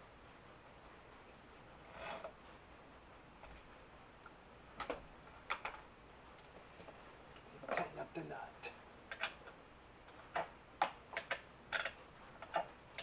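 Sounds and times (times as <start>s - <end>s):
small metal clicks and knocks: 8.6s - 13.0s.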